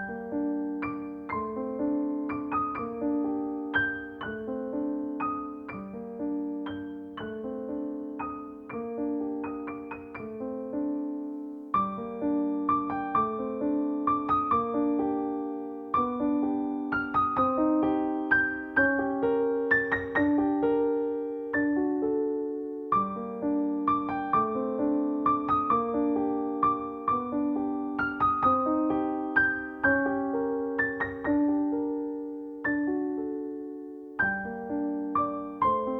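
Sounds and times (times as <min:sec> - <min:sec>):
slow solo piano melody: 0:00.0 - 0:35.9.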